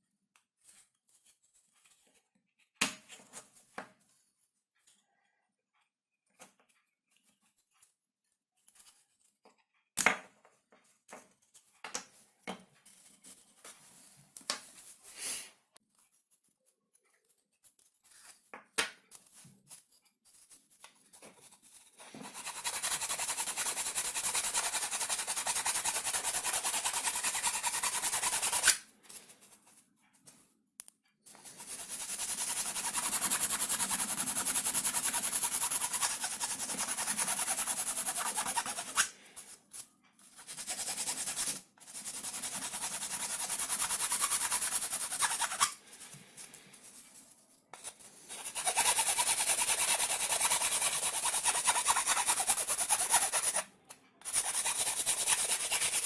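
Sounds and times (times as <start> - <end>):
scroll saw rasping: 21.7 - 28.8, 31.4 - 39.2, 42.0 - 45.8, 47.8 - 56.0.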